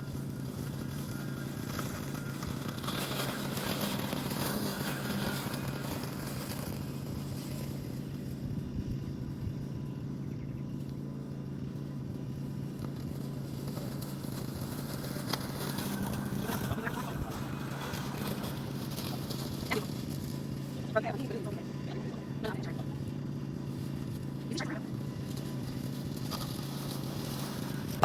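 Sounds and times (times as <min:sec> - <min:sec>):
lawn mower humming: 0:00.0 - 0:28.0.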